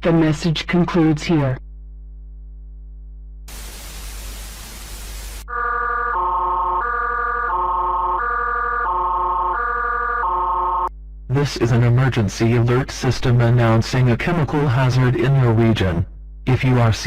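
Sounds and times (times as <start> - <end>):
low steady hum: 0.0 - 5.4, 10.8 - 17.0
loud static hiss: 3.5 - 5.5.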